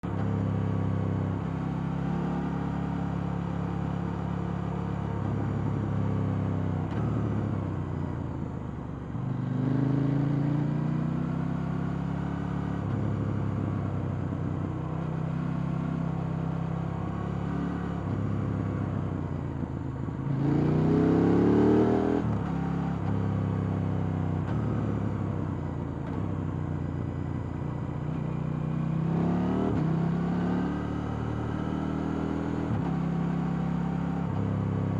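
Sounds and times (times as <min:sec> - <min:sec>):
motorcycle engine revving: 0:09.4 - 0:13.8, 0:20.3 - 0:26.9, 0:28.1 - 0:34.8.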